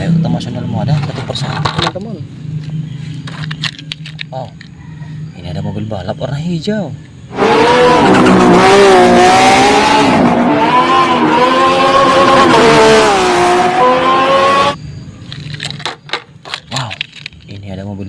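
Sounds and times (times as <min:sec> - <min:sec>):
racing car engine revving: 0:07.3 - 0:14.8.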